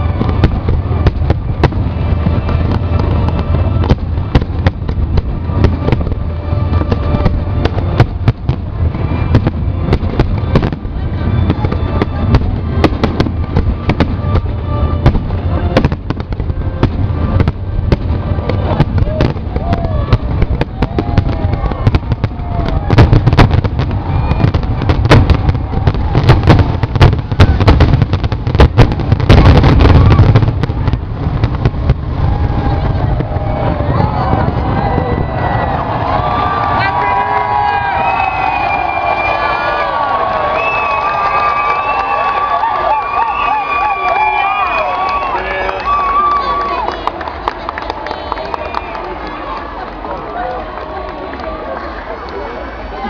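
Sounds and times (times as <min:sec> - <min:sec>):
rumble of overlapping explosions: 0:00.0 - 0:41.7
fireworks bangs: 0:00.0 - 0:50.1
crowd voices: 0:00.0 - 0:53.0.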